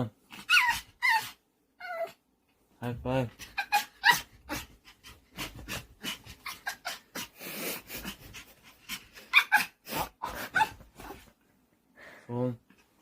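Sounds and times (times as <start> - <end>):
puppy panting and huffing: 3.3 - 11.4.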